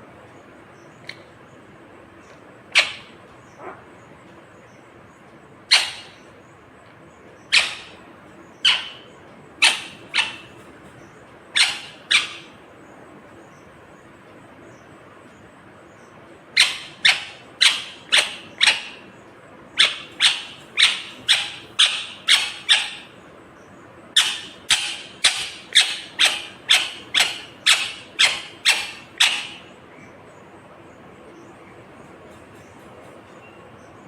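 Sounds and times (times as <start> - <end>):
parakeet calling: 2.7 - 4.9, 5.6 - 6.5, 7.1 - 12.7, 16.0 - 30.4.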